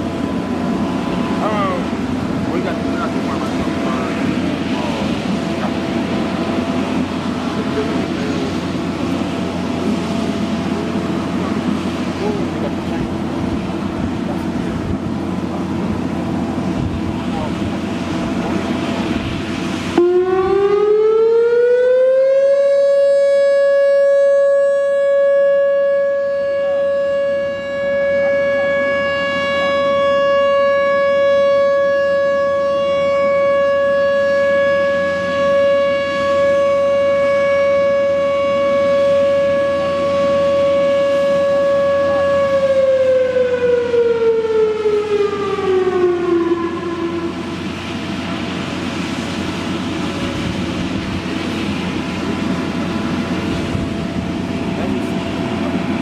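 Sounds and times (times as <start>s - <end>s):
outdoor warning siren: 0.0s - 56.0s.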